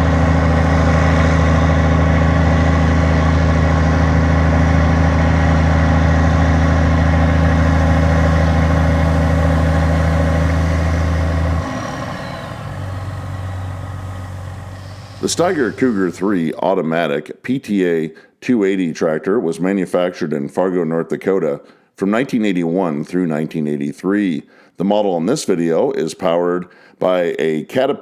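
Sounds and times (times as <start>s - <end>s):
diesel engine humming: 0.0s - 16.5s.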